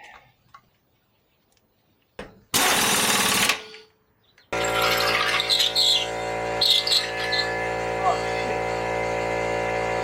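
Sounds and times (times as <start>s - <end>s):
pneumatic impact wrench: 2.5s - 3.8s
humming drone: 4.6s - 10.0s.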